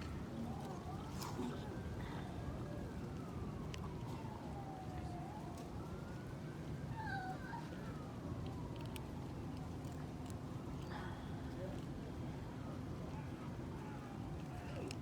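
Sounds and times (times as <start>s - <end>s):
low street hum: 0.0s - 15.0s
distant siren wailing: 0.2s - 9.4s.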